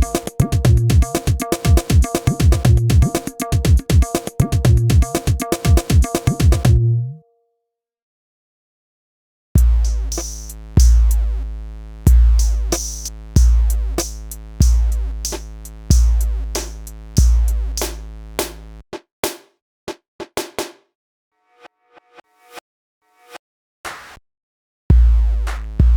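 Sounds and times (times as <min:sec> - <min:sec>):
sharp high drum hits: 0:00.0 - 0:06.8
deep kick drum beats: 0:00.0 - 0:06.9, 0:09.6 - 0:11.4, 0:12.1 - 0:18.6, 0:24.9 - 0:25.9.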